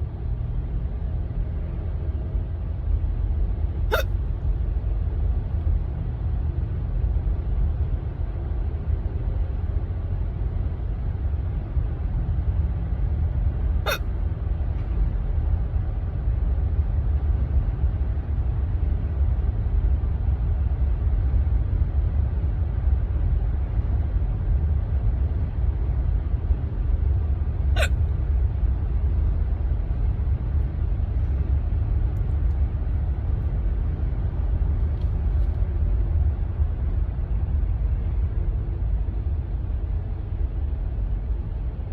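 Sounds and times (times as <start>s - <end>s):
steady low rumble: 0.0s - 41.9s
person hiccuping: 3.9s - 4.1s, 13.9s - 14.1s, 27.8s - 28.0s.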